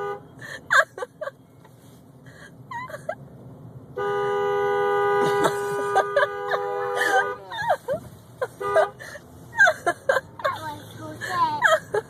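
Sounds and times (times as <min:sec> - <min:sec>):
car horn blaring: 0:00.0 - 0:00.4, 0:03.9 - 0:07.6, 0:08.5 - 0:09.0
child's voice: 0:10.4 - 0:11.7.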